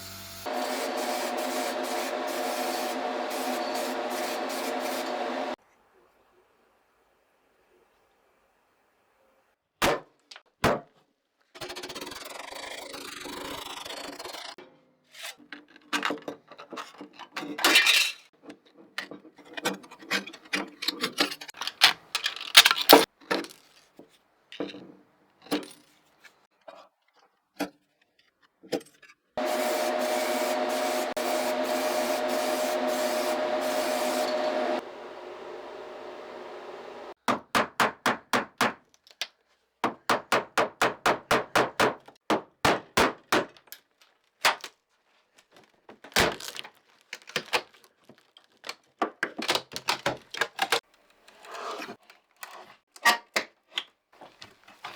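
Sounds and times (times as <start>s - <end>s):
machine running: 0.0s - 5.6s, 29.4s - 37.2s.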